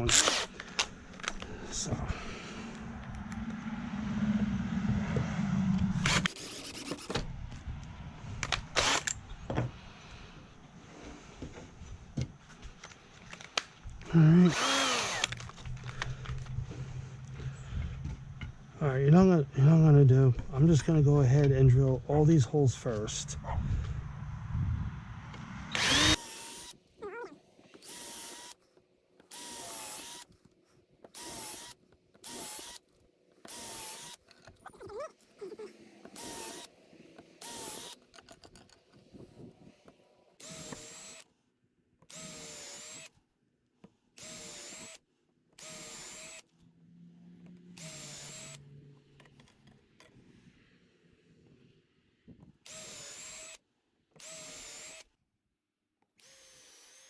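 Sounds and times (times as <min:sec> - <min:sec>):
cordless drill boring into wood: 0:00.0 - 0:01.4, 0:06.0 - 0:07.1, 0:08.4 - 0:09.2, 0:14.2 - 0:16.4, 0:25.7 - 0:26.8, 0:27.7 - 0:28.6, 0:29.2 - 0:30.4, 0:31.1 - 0:39.1, 0:40.4 - 0:41.3, 0:42.1 - 0:43.2, 0:44.2 - 0:46.5, 0:47.8 - 0:48.6, 0:52.6 - 0:55.2, 0:56.2 - 0:57.0.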